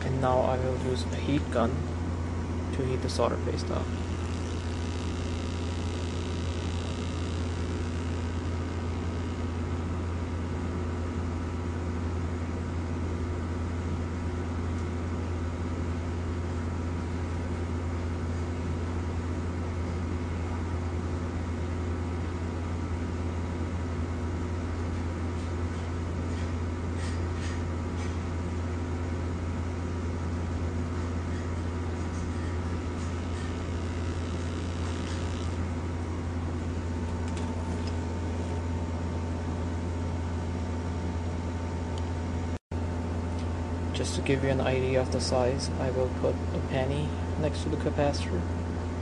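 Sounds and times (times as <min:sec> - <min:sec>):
heat gun blowing: 0:03.9 - 0:09.5, 0:32.4 - 0:35.6.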